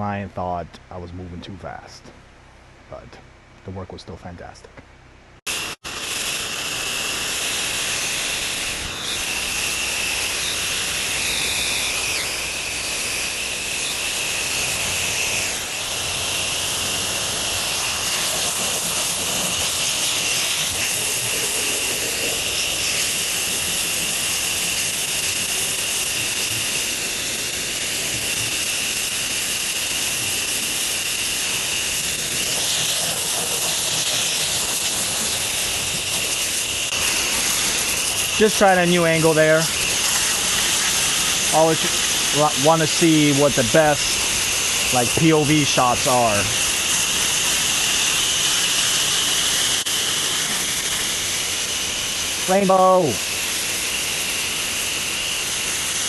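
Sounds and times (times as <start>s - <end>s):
steady high whine: 0.0s - 56.0s
pressure washer spray hissing: 5.5s - 56.0s.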